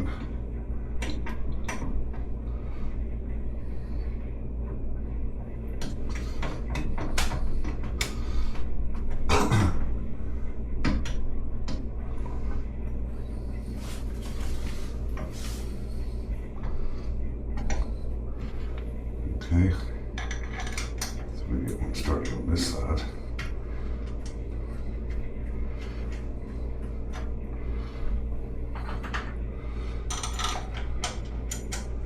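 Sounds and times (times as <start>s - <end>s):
steady low hum: 0.0s - 32.0s
metal parts clicking and clinking: 30.1s - 31.9s.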